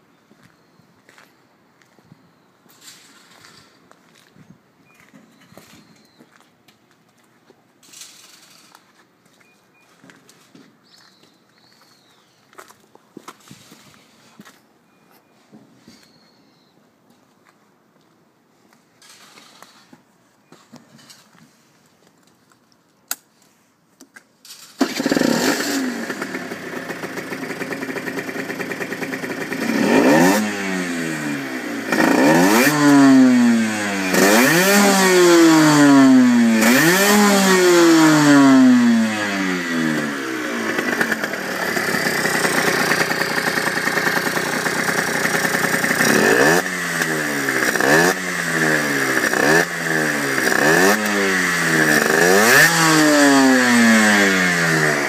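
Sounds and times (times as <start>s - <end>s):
motorcycle engine starting and revving: 7.8s - 8.9s, 24.5s - 55.0s.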